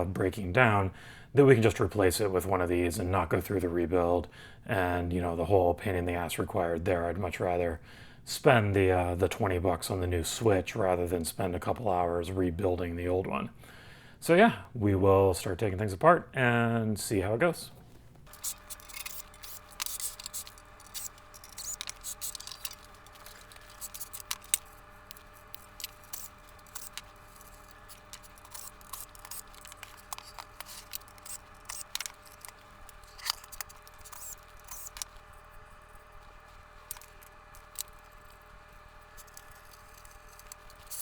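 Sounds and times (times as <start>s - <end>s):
faint steady hum: 0.0s - 41.0s
hand tools and metal parts clattering: 18.3s - 41.0s.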